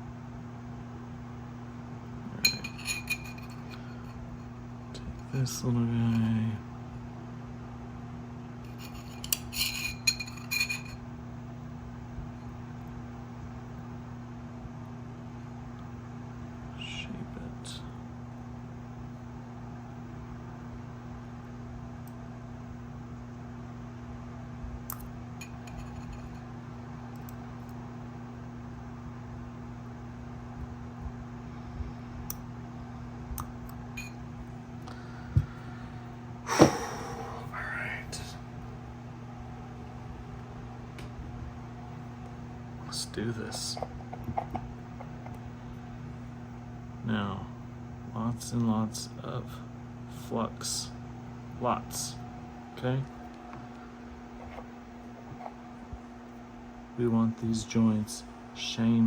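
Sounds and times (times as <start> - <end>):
low electrical hum: 0.0 - 59.0
metal tool clinking on metal: 2.4 - 3.9, 8.7 - 11.0, 34.0 - 34.2.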